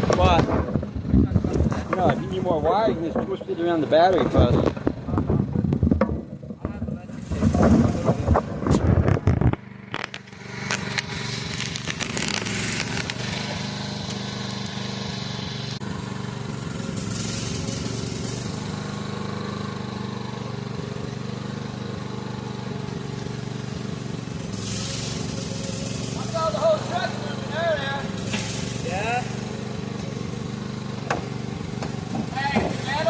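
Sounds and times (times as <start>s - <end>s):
loud knocks and clatter: 0.0s - 10.9s, 31.0s - 33.0s
engine running steadily: 0.0s - 33.0s.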